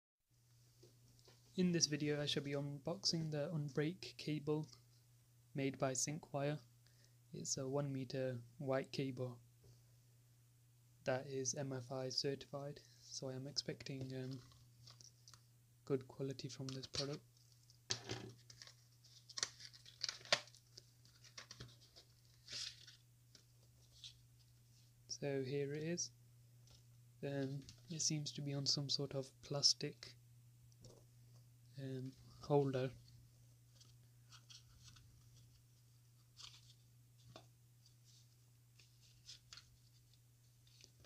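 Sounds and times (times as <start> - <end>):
low steady hum: 0.3 - 41.0
plastic packaging clicks and rustles: 16.6 - 24.2.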